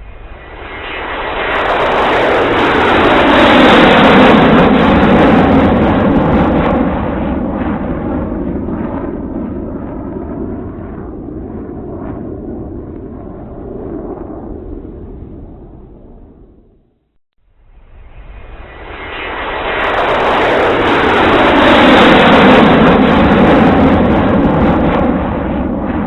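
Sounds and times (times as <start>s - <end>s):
airplane flying overhead: 0.0s - 26.0s.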